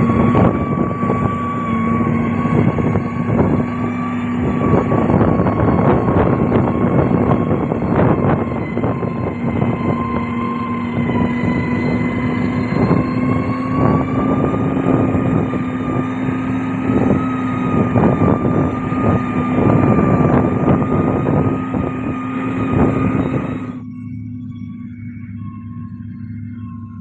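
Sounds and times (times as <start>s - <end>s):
steady hum: 0.0s - 10.6s
diesel machine engine drone: 0.0s - 27.0s.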